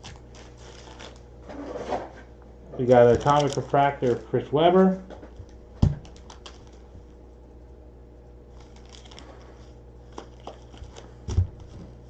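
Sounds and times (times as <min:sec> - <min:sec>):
trading cards rustling: 0:00.0 - 0:01.2, 0:02.8 - 0:04.4, 0:05.4 - 0:07.0, 0:08.5 - 0:12.0
steady low hum: 0:00.0 - 0:12.0.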